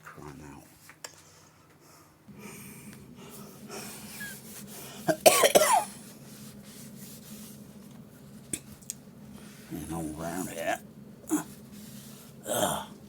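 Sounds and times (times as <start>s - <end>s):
steady low hum: 0.0s - 13.0s
person coughing: 5.0s - 6.0s.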